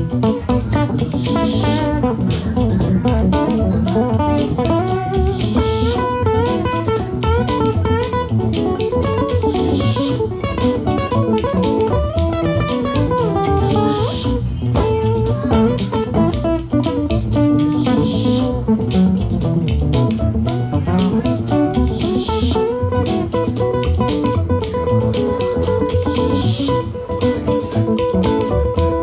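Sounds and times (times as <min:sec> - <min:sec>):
bass guitar: 0:00.0 - 0:29.0
electric guitar lead: 0:00.0 - 0:29.0.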